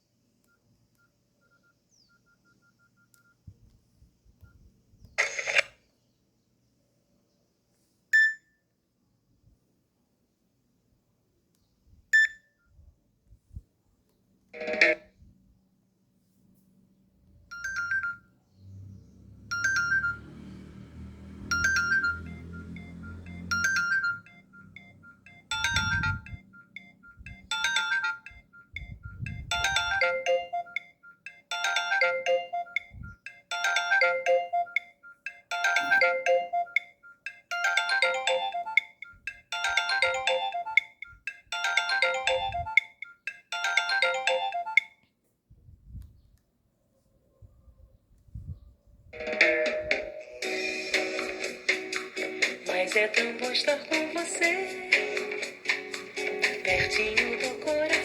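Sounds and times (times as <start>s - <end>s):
mobile phone ringtone melody: 14.6s - 15.0s, 17.5s - 18.2s, 19.5s - 20.4s, 21.4s - 45.0s, 49.2s - 58.0s.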